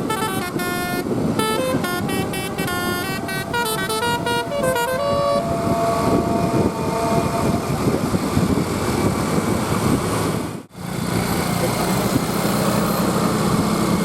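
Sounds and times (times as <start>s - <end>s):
musical bus horn: 0.0s - 8.5s
bus passing by: 0.0s - 14.0s.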